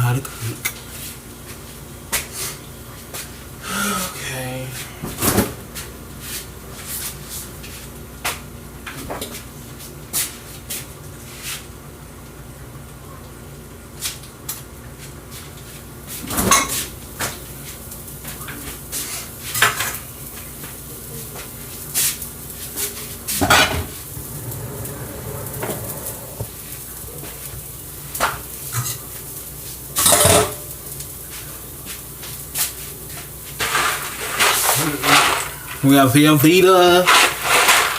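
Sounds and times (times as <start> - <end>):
steady low hum: 23.4 - 27.3
pots and pans clattering: 30.0 - 30.7, 33.6 - 35.8, 37.1 - 37.9.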